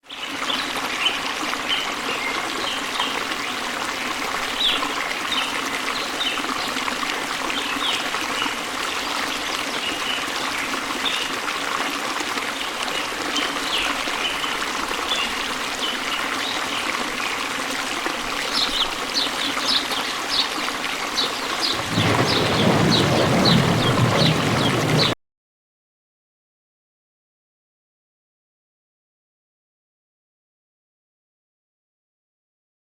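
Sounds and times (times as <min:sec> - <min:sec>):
stream trickling: 0:00.1 - 0:25.2
bird chirps: 0:21.7 - 0:25.1
deep rushing sound: 0:21.7 - 0:25.2.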